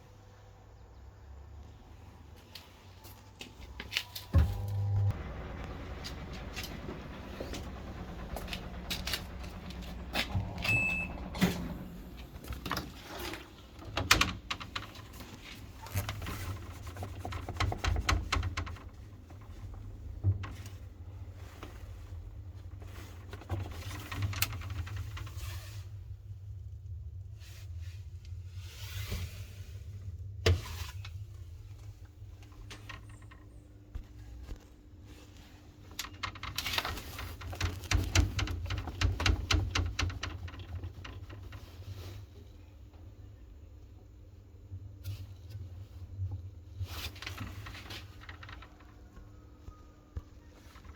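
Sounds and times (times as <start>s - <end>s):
washing machine rumble: 3.6s - 50.9s
washing machine knocks and rattles: 4.4s - 15.4s, 16.3s - 20.8s, 36.2s - 42.0s.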